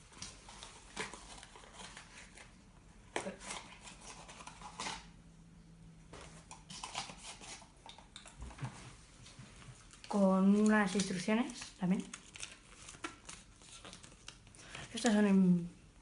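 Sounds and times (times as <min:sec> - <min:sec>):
packaging rustling and clicking: 0:09.8 - 0:15.2.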